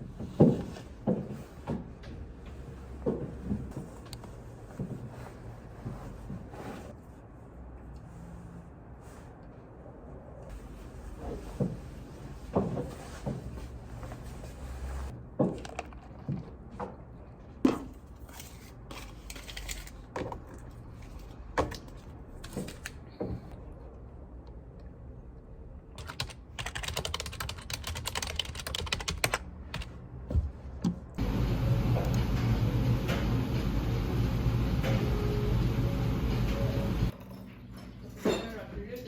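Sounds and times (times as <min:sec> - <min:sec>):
steady low hum: 0:31.2 - 0:37.1.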